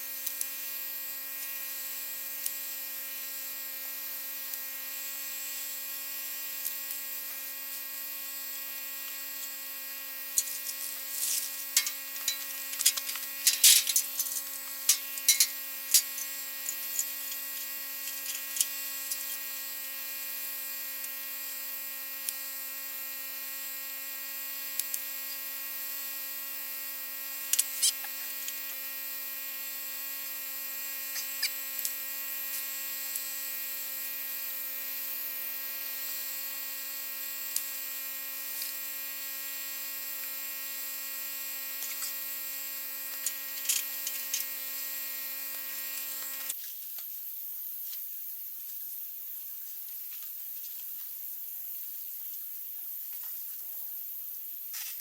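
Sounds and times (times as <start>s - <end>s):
steady hum with hiss: 0.0s - 21.3s.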